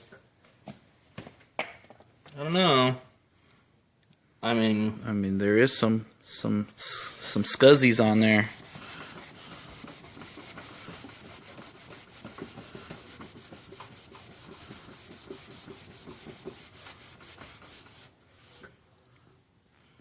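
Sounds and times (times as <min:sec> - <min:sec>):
sock scrubbing plastic headlight: 0:08.0 - 0:18.1.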